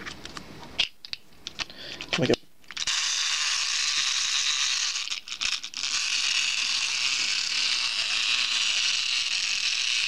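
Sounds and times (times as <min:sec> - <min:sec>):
wind-up toy motor whirring: 0:02.7 - 0:10.0.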